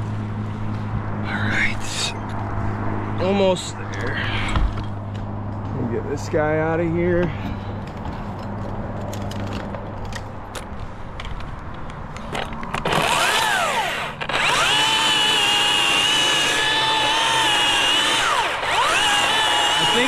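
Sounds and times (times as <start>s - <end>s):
electric chainsaw motor whine: 12.8s - 20.0s.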